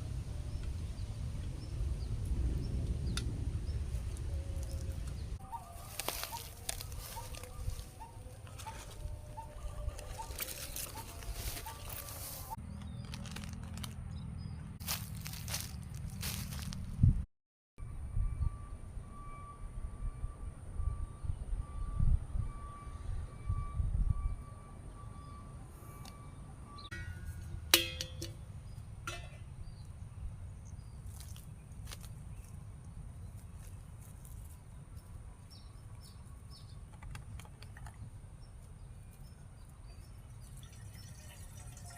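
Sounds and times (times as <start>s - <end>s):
steady low rumble: 0.0s - 8.4s
sharp metallic clink: 26.9s - 28.4s.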